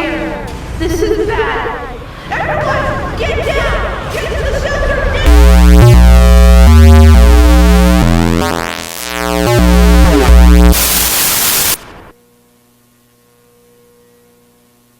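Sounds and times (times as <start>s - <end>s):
distorted synthesized tones: 5.3s - 12.1s
harsh static: 5.3s - 12.2s
faint mains hum: 11.8s - 14.9s.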